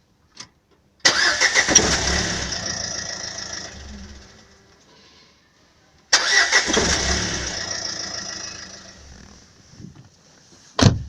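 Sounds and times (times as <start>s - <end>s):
diesel engine cranking and starting: 1.0s - 4.8s, 6.1s - 9.6s.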